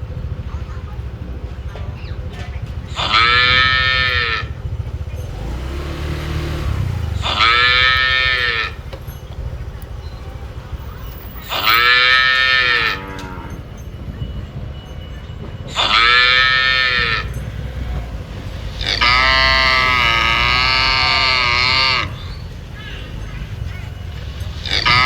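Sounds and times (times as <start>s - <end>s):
cow mooing: 3.0s - 4.6s, 5.3s - 8.8s, 11.4s - 13.6s, 15.8s - 17.4s, 18.8s - 22.3s.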